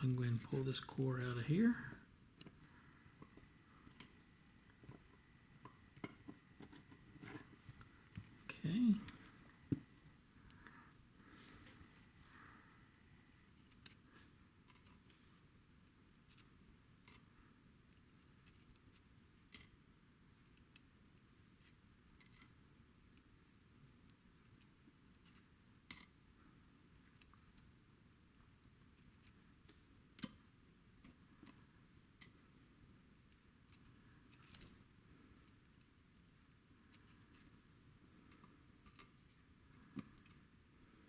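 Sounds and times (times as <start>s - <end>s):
small metal lock parts clicking: 21.6s - 22.5s, 38.8s - 39.2s.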